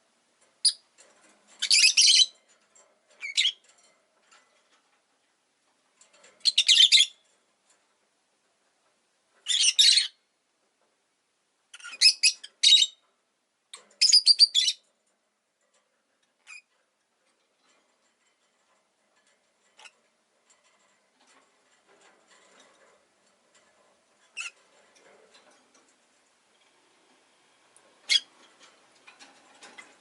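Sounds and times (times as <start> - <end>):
lovebird chirping: 1.6 - 2.3, 6.4 - 7.2, 9.5 - 10.2, 11.8 - 13.0, 14.0 - 14.8, 28.1 - 28.3.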